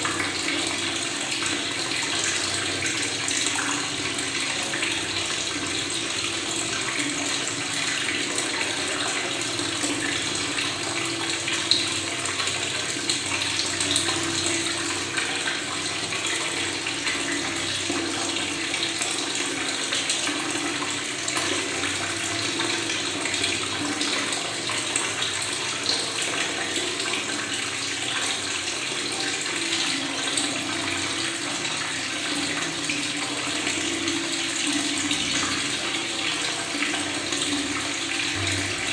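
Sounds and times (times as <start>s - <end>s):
tap water running and gurgling: 0.0s - 38.9s.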